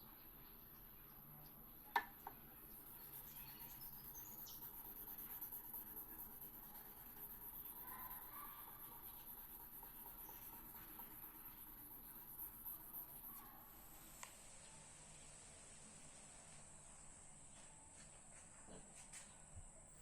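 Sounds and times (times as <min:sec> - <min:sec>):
faint scratching: 0:02.7 - 0:14.4.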